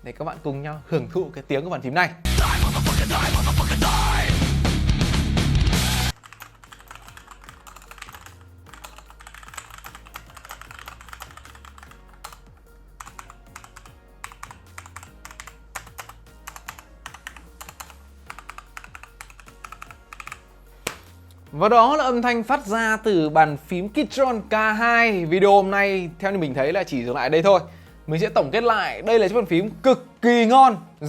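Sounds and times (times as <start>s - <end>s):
mechanical keyboard typing: 6.2s - 20.4s.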